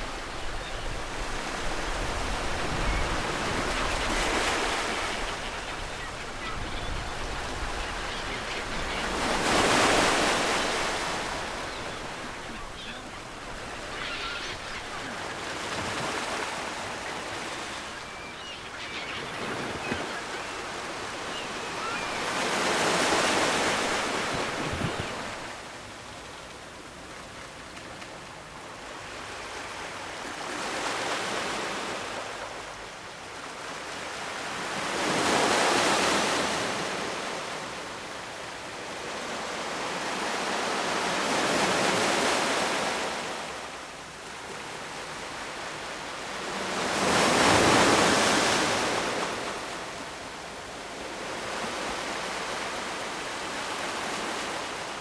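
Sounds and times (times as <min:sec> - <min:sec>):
ocean waves breaking: 0:00.0 - 0:25.7.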